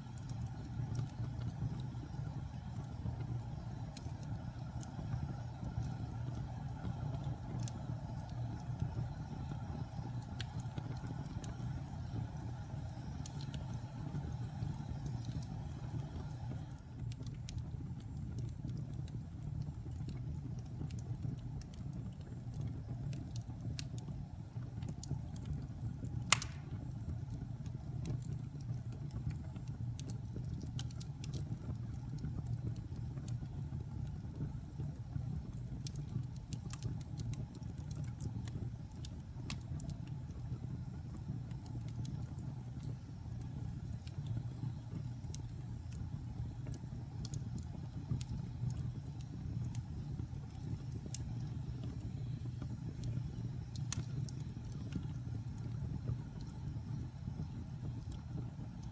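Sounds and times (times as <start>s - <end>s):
wood fire crackling: 0.0s - 58.9s
loud pop from fire: 26.3s - 27.0s.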